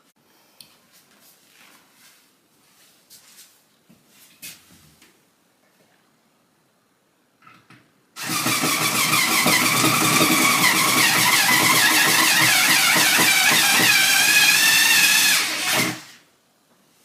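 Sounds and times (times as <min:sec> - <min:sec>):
power drill motor whine: 0:08.2 - 0:16.2.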